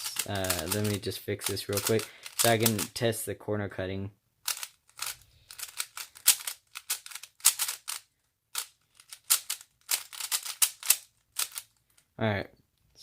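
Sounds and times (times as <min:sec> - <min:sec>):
speed cube clacking: 0:00.0 - 0:02.9, 0:04.4 - 0:11.8.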